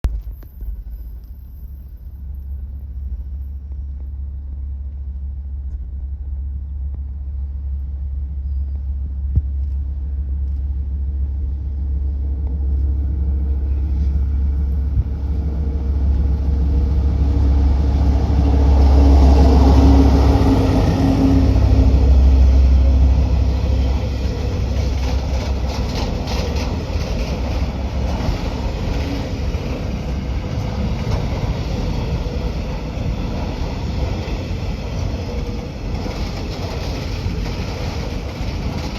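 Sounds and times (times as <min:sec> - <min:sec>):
diesel locomotive engine rumble: 0:00.0 - 0:38.9
train wheels clattering on rails: 0:22.5 - 0:38.9.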